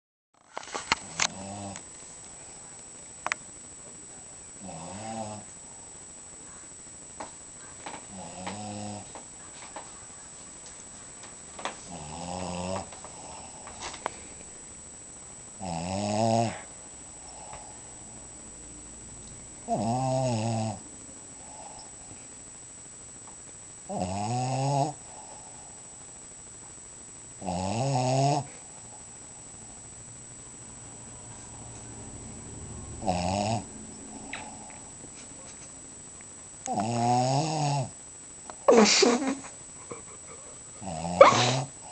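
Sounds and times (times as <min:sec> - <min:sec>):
dog snoring: 0:01.2 - 0:01.8, 0:04.6 - 0:05.5, 0:08.1 - 0:09.1, 0:11.8 - 0:13.9, 0:15.6 - 0:17.8, 0:19.6 - 0:20.8, 0:23.9 - 0:25.4, 0:27.4 - 0:28.6, 0:33.0 - 0:34.8, 0:36.7 - 0:38.0, 0:40.3 - 0:41.9.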